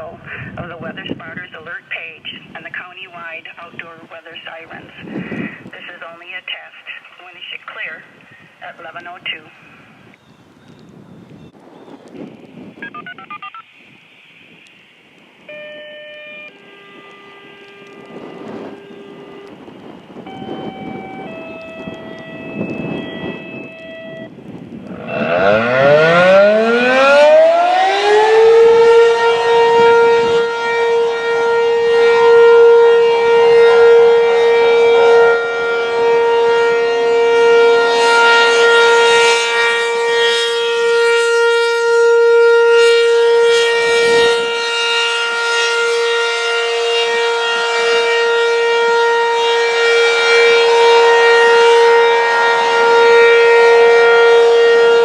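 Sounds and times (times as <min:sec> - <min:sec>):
outdoor warning siren winding up: 0:14.6 - 0:55.0.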